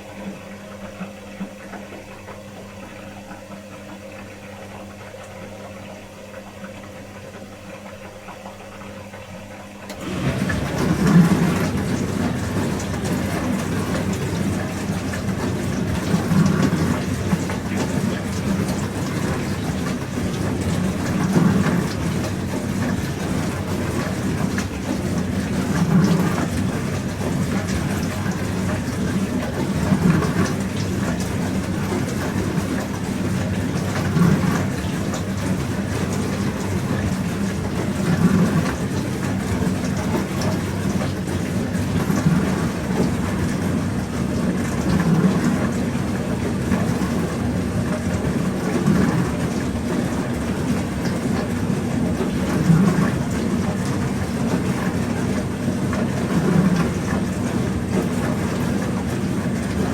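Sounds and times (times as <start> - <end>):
dishwasher humming: 0.0 - 59.9
water spraying inside dishwasher: 9.6 - 59.9.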